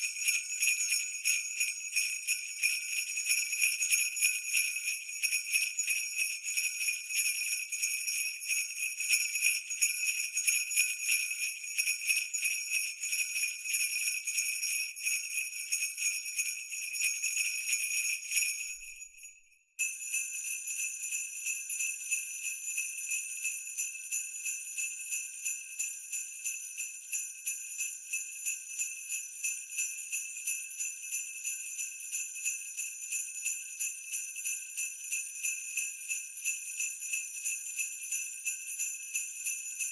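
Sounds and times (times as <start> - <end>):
sleigh bells jingling: 0.0 - 18.9.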